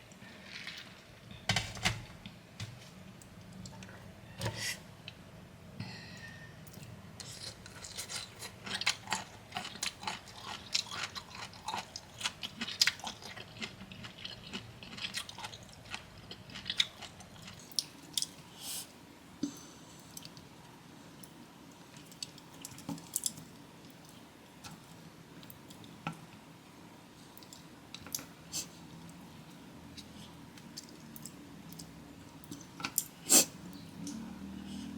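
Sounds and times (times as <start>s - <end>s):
crunchy chewing: 7.2s - 17.9s.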